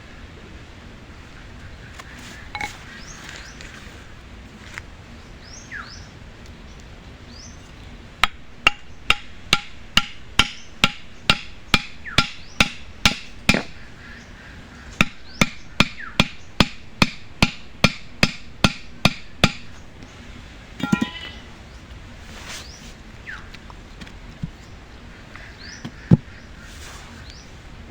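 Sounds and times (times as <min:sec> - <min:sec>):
birds chirping: 0:01.2 - 0:04.2, 0:05.1 - 0:09.5, 0:10.2 - 0:16.9, 0:19.2 - 0:27.8
hard knocks: 0:08.2 - 0:13.8, 0:15.0 - 0:19.7.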